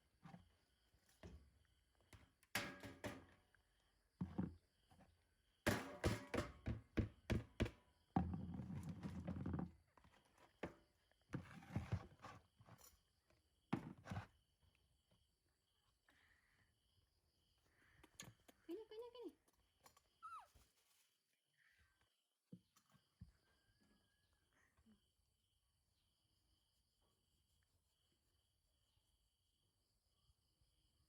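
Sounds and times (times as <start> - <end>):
knocks and thuds: 5.7 - 8.6.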